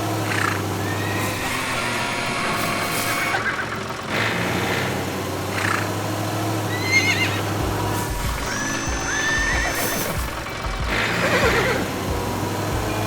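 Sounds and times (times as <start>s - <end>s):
rising tone: 0.8s - 3.7s
cartoon background music: 6.8s - 13.0s.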